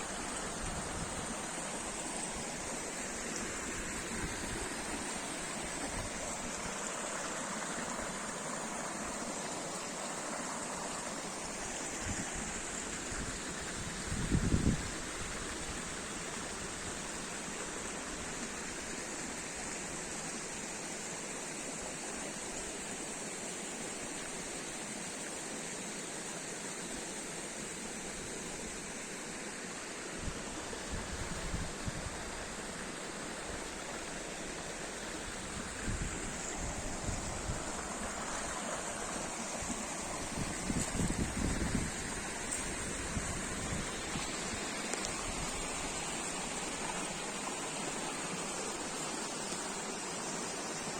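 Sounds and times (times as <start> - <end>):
running water rushing: 0.0 - 50.9
wind bumps on microphone: 40.3 - 42.2.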